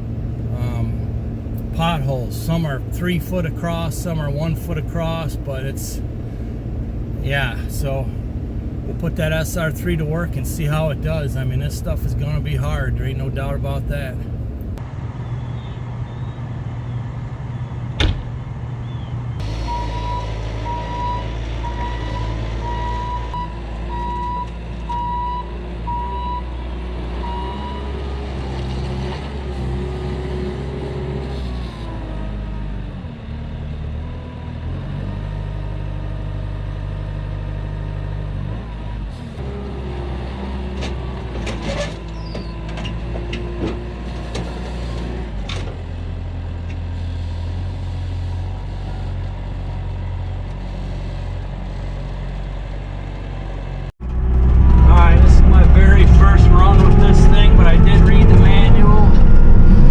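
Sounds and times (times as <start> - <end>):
diesel engine under load: 0.0 - 59.9
reversing alarm beeping: 19.4 - 26.6, 27.2 - 28.0.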